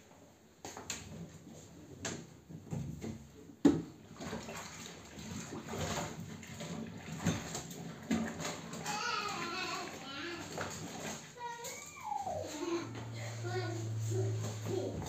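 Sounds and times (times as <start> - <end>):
water sloshing: 3.8 - 15.0.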